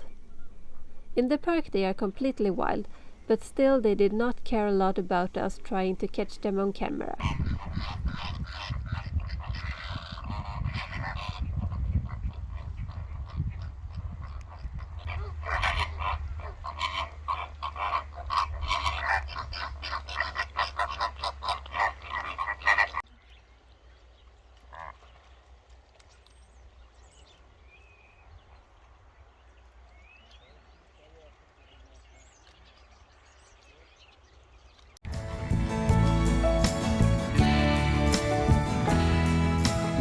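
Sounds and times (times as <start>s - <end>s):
flamingos honking: 0.0s - 13.8s, 14.7s - 23.0s
wind on microphone: 5.6s - 20.0s.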